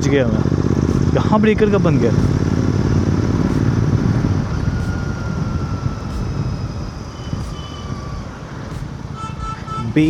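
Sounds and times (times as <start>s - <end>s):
motorcycle engine running: 0.0s - 9.2s
road noise: 0.0s - 10.0s.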